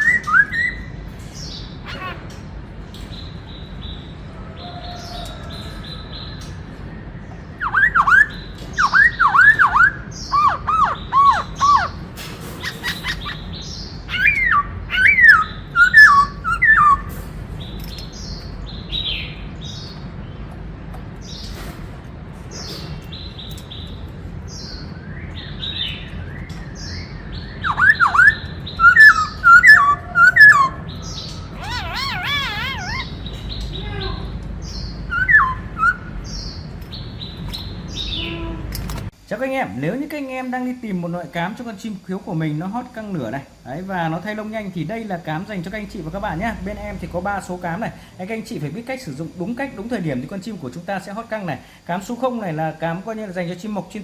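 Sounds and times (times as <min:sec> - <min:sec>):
bird singing whistled phrases: 0:00.0 - 0:00.9, 0:07.6 - 0:11.9, 0:14.1 - 0:17.1, 0:25.8 - 0:33.1, 0:35.1 - 0:36.1
soft high bird chirps: 0:03.0 - 0:20.1, 0:22.5 - 0:38.6.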